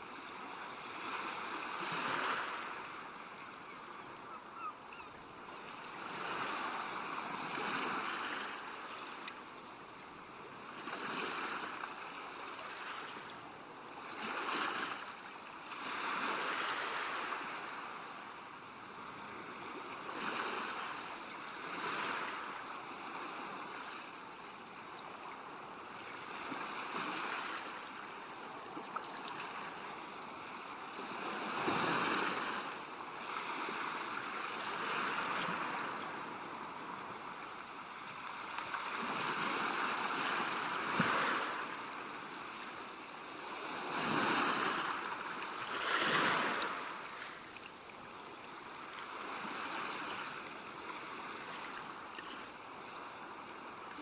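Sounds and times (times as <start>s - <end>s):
ocean waves breaking: 29.4s - 42.4s, 43.3s - 47.5s.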